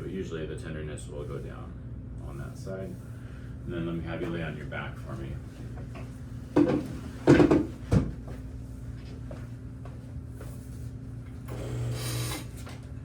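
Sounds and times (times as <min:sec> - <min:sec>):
treatment table knocks and creaks: 0:06.6 - 0:08.4.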